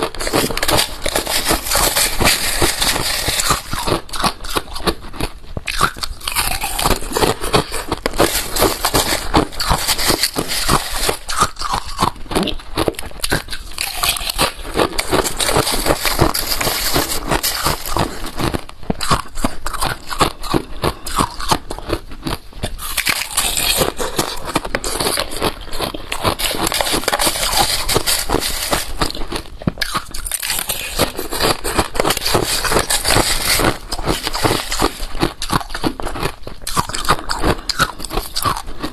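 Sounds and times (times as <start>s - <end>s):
ice being chewed crunching: 0.0s - 38.9s.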